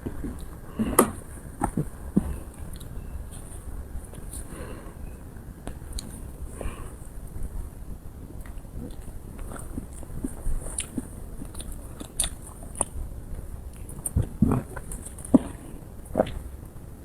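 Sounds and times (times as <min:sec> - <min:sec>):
person chewing with mouth smacks: 0:08.4 - 0:16.6.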